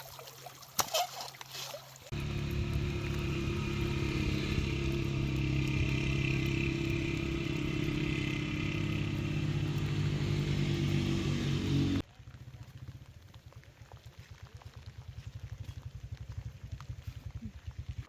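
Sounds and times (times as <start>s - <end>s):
small motor droning: 2.1s - 12.0s.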